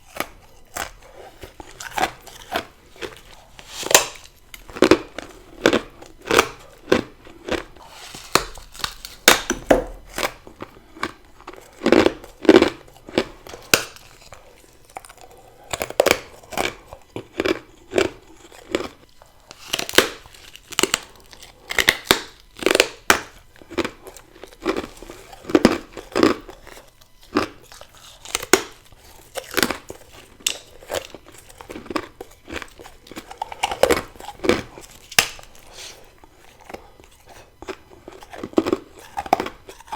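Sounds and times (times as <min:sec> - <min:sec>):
biting hard ice crunch: 0:00.0 - 0:18.9
crunching chews: 0:00.0 - 0:39.9.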